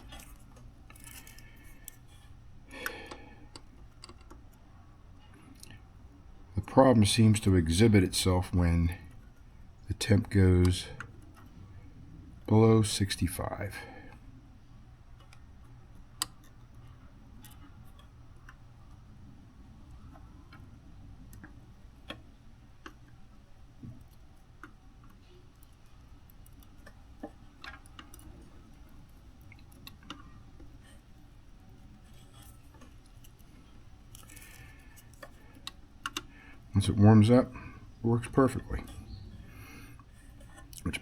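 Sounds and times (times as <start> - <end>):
light clicks and taps of tools: 0.0 - 4.6, 23.8 - 36.6
low steady hum: 0.0 - 41.0.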